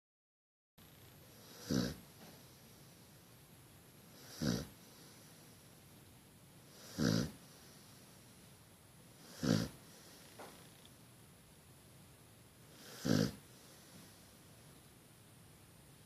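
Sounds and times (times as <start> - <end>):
dog snoring: 1.3 - 3.0, 4.1 - 5.6, 6.6 - 8.2, 9.1 - 10.5, 12.6 - 14.3.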